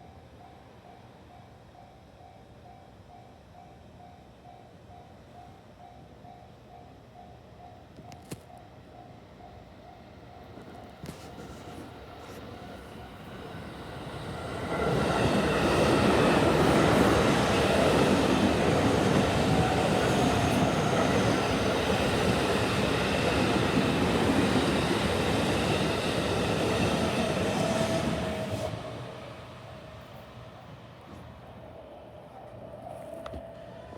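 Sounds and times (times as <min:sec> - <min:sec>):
train wheels rumbling on rails: 0:10.4 - 0:31.6.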